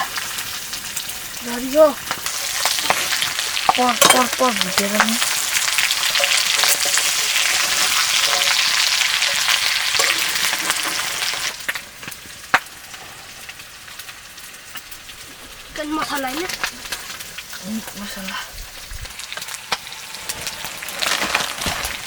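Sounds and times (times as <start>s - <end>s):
chicken sizzling in hot oil: 0.0s - 22.0s.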